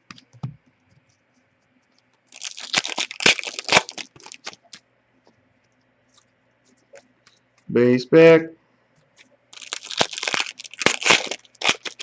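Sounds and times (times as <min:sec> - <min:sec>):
foil wrapper tearing and crinkling: 0:02.3 - 0:04.8, 0:09.5 - 0:12.0.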